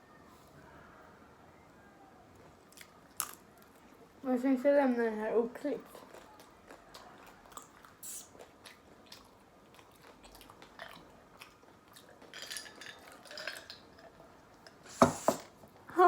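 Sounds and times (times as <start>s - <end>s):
person chewing and lip-smacking: 6.0s - 12.2s.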